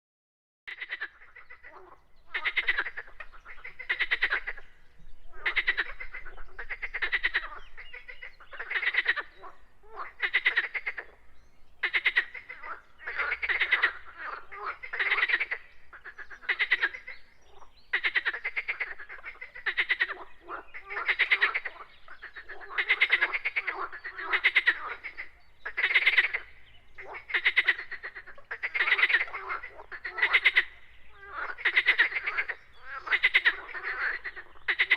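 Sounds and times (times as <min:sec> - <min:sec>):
frogs croaking: 0:00.7 - 0:34.9.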